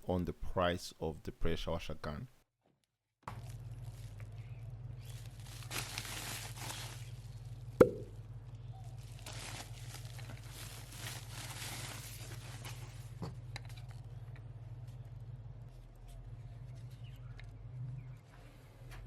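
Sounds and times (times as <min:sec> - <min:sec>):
plastic packaging rustling: 0:03.3 - 0:07.7, 0:08.9 - 0:13.2
steady low hum: 0:03.3 - 0:19.0
sharp knock: 0:07.8 - 0:08.1.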